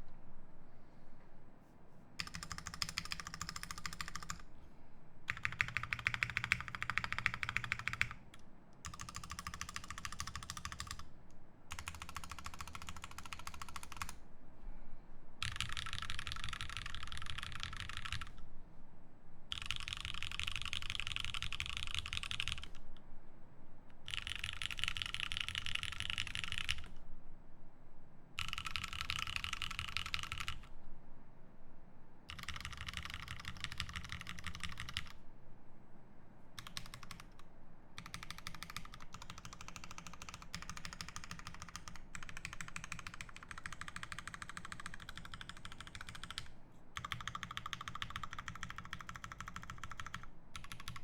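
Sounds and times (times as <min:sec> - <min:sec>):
fast typing on mechanical keyboard: 0:02.2 - 0:04.4, 0:05.3 - 0:11.1, 0:11.7 - 0:14.2, 0:15.4 - 0:18.4, 0:19.5 - 0:22.8, 0:24.0 - 0:27.0, 0:28.4 - 0:30.7, 0:32.3 - 0:35.2, 0:36.6 - 0:37.4, 0:38.0 - 0:51.0.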